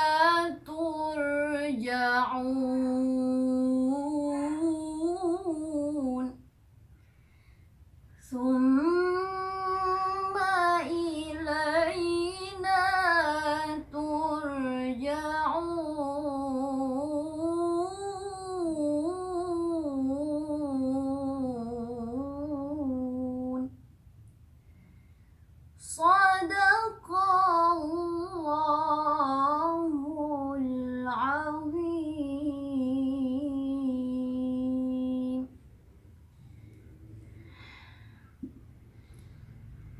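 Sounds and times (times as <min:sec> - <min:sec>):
girl reciting melodically: 0:00.0 - 0:06.4, 0:08.2 - 0:23.8, 0:25.8 - 0:35.5.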